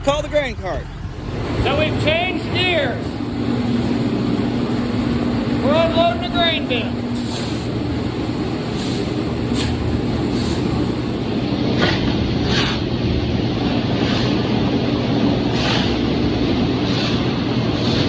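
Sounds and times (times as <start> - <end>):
combine harvester engine drone: 1.1 - 12.1
grain swishing: 4.5 - 11.5.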